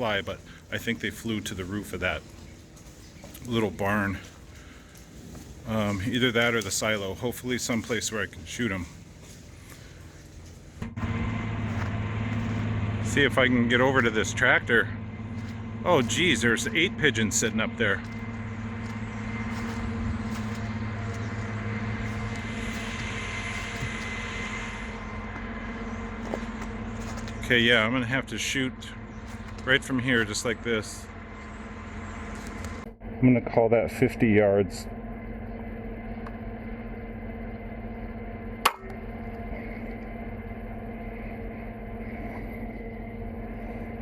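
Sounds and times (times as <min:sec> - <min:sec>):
farm machinery droning: 0:00.0 - 0:44.0
steady low hum: 0:00.0 - 0:44.0.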